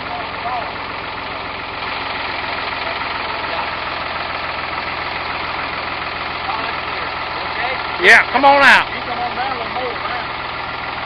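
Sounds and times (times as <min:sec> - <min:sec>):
vehicle engine idling: 0:00.0 - 0:11.0.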